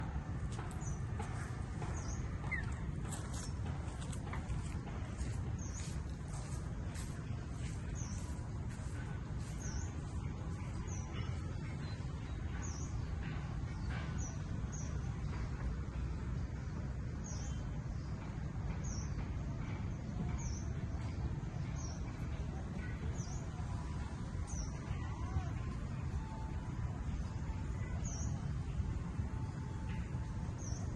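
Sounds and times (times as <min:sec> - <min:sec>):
steady low rumble: 0:00.0 - 0:30.9
small bird chirping: 0:01.9 - 0:04.0.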